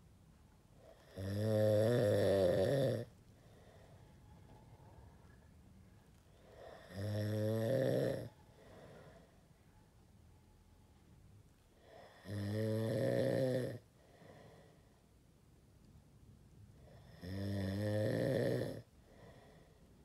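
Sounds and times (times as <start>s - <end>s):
quiet breathing: 0.6s - 10.7s, 11.5s - 15.5s, 16.5s - 20.0s
person snoring: 0.9s - 3.1s, 6.5s - 8.3s, 11.8s - 13.8s, 16.9s - 18.9s.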